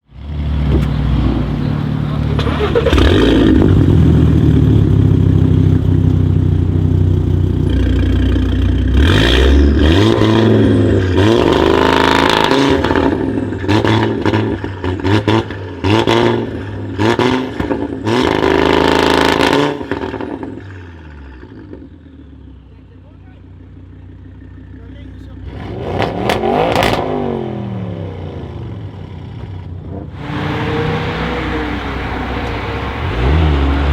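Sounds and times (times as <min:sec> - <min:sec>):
loud car engine revving: 0:00.1 - 0:22.1, 0:25.2 - 0:33.9
exhaust crackles: 0:00.4 - 0:20.6, 0:29.4 - 0:33.9.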